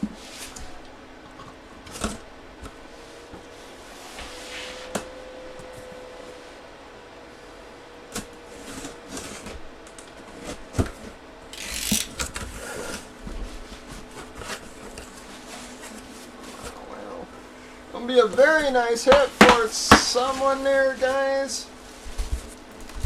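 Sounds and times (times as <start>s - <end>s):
packaging tearing: 11.6s - 12.3s.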